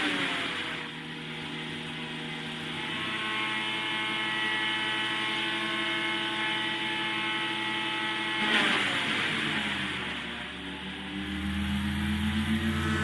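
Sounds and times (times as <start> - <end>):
wood chipper engine running: 0.0 - 13.0.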